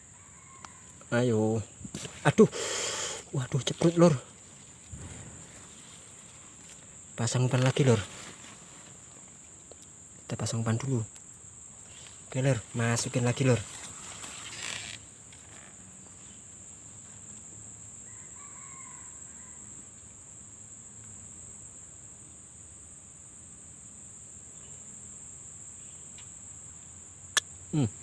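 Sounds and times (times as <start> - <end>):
rooster crowing: 0.0 - 1.0, 18.0 - 19.8
crickets chirping: 0.0 - 28.0.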